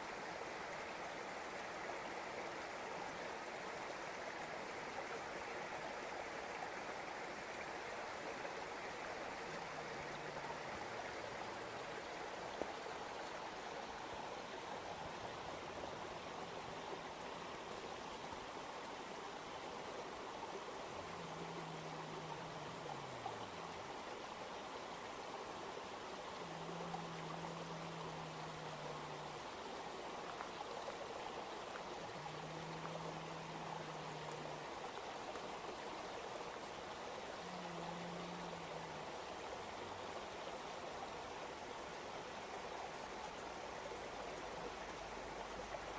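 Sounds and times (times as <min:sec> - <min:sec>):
river rushing over rocks: 0:00.0 - 0:45.9.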